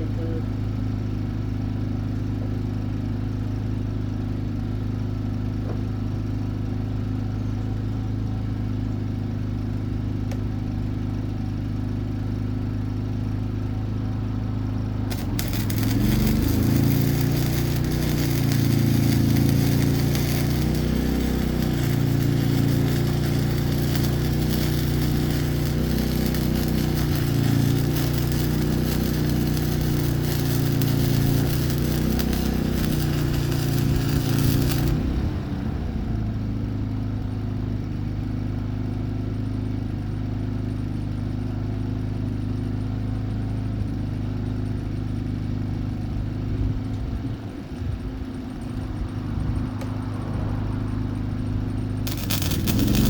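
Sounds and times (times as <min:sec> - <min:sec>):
low electrical hum: 0:14.9 - 0:35.1
welder arc crackling: 0:15.1 - 0:35.3, 0:52.0 - 0:53.0.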